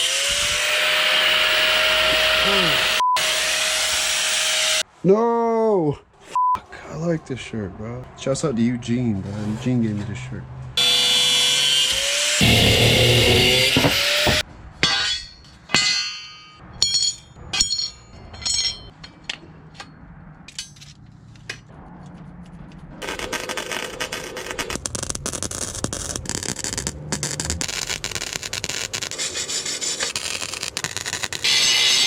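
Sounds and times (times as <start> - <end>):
metal grinding: 10.8 - 19.2, 23.0 - 32.0
steel pieces clanking: 12.4 - 19.9, 20.5 - 21.7, 24.6 - 32.0.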